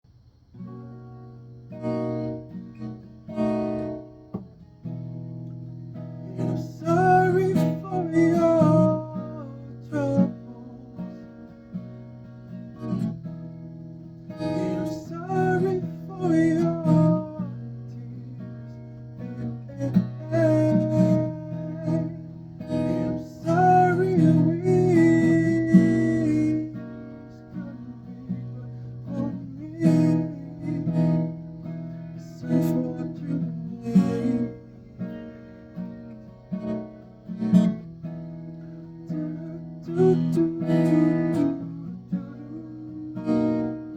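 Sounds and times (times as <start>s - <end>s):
strummed acoustic guitar: 0.1s - 43.9s
person singing: 6.3s - 11.3s, 14.3s - 31.4s, 32.2s - 35.3s, 39.1s - 43.9s.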